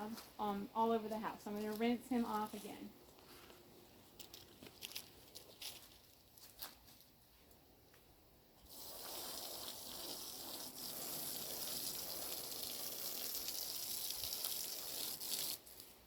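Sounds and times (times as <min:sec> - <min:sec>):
hose spraying water on wall: 0:08.6 - 0:16.0.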